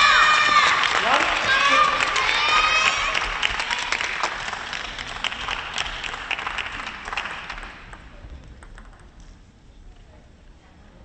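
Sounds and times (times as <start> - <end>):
audience applause: 0.0 - 7.9.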